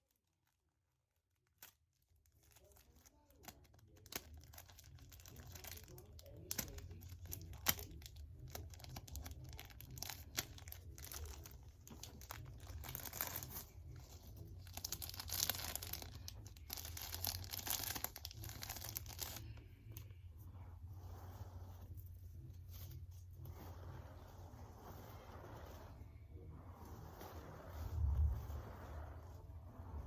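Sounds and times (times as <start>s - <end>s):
debris and paper crinkling: 0.0s - 20.1s.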